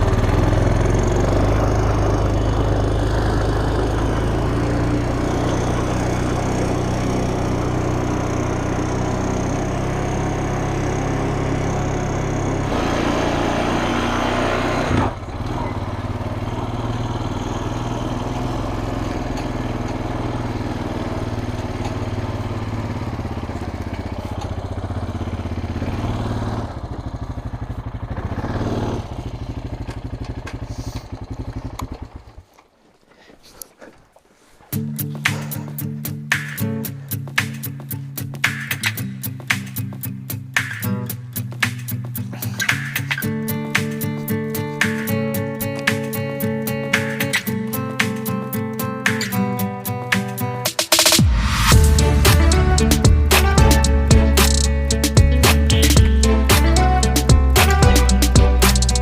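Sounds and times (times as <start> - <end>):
chainsaw running: 0.0 - 32.7, 50.9 - 59.0.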